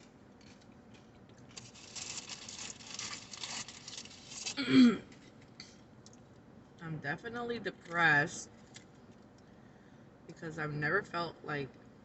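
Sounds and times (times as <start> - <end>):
paper packaging crinkling: 0.4 - 4.6.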